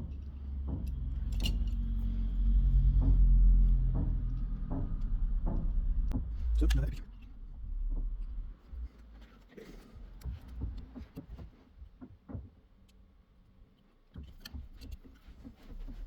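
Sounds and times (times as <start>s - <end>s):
small tools clicking and tapping: 0.0s - 3.2s
low background rumble: 0.0s - 11.3s.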